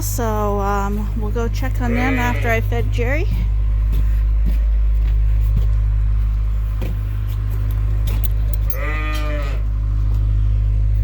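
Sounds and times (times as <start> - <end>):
steady low hum: 0.0 - 11.0
sheep bleating: 1.8 - 2.6, 8.8 - 9.7.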